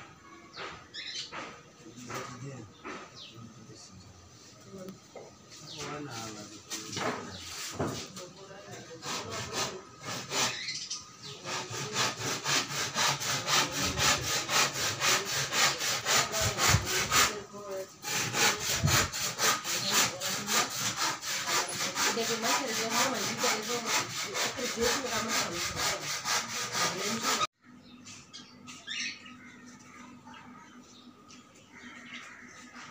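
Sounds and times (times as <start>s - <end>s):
hand saw cutting wood: 6.7s - 10.7s, 11.3s - 27.5s.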